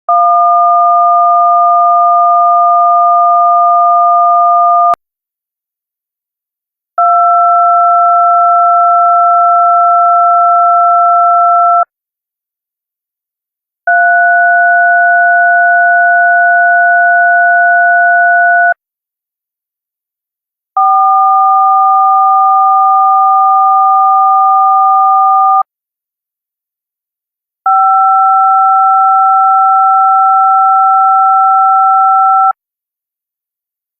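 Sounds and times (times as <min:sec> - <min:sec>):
telephone touch-tone beeps: 0:00.1 - 0:05.0, 0:13.9 - 0:18.8, 0:20.8 - 0:25.6, 0:27.7 - 0:32.6.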